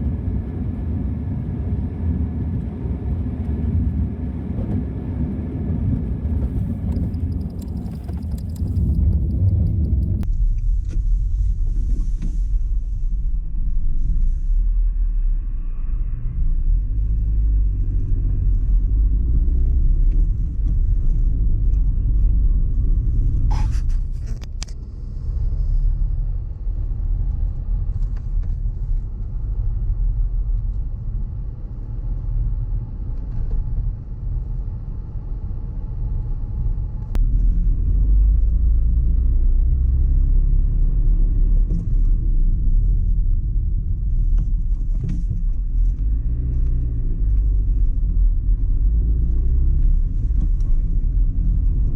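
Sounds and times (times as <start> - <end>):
car engine and tyres rumbling: 0.0 - 51.9
rattle of clicks: 6.5 - 10.3.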